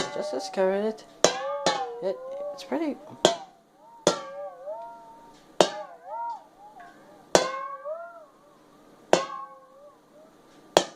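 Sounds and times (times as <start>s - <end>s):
kitchenware struck and ringing: 9.2s - 9.5s.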